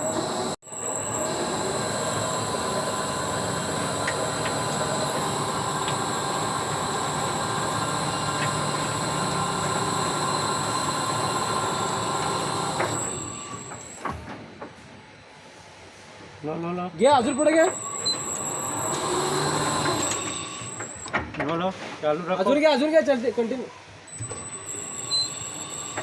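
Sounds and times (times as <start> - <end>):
high metallic whine: 0.0 - 14.0
overhead crane drive humming: 0.0 - 14.0.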